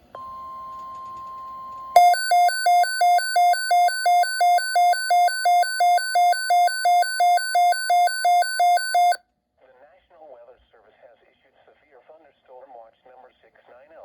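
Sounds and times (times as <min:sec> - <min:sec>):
pulsing two-pitch alarm: 0:02.0 - 0:09.2.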